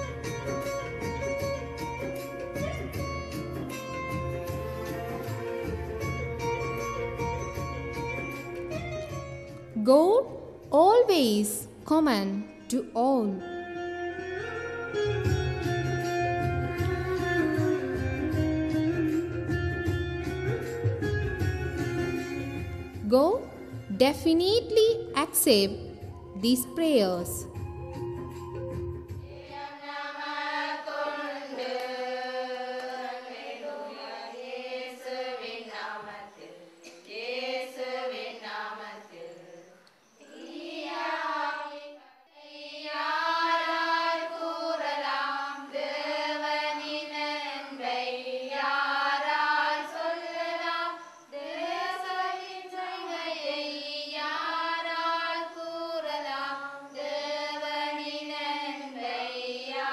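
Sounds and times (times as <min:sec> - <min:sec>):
voices singing prayer chant: 0:29.2 - 0:59.9.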